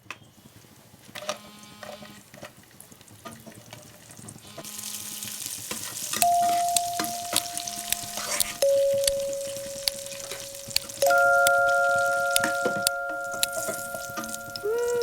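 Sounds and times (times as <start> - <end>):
food sizzling in a pan: 3.0 - 15.0
loud steady tone: 6.2 - 15.0
utensil clicks: 6.2 - 15.0.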